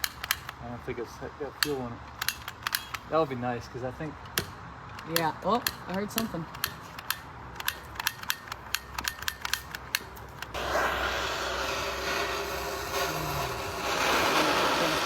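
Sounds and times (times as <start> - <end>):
torch burning with steady hiss: 10.5 - 15.0.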